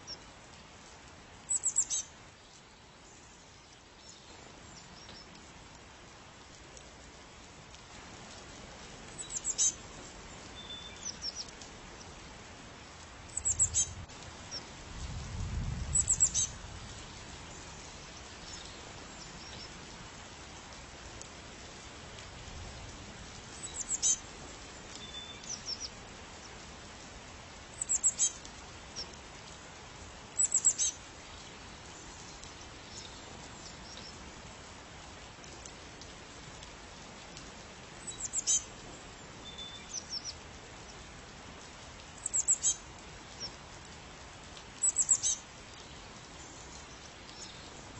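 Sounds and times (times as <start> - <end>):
background hiss: 0.0 - 47.9
bird chirping: 1.5 - 2.1, 9.2 - 9.7, 13.3 - 13.9, 16.0 - 16.5, 23.6 - 24.2, 27.8 - 28.3, 30.4 - 30.9, 38.1 - 38.6, 42.2 - 42.8, 44.8 - 45.4.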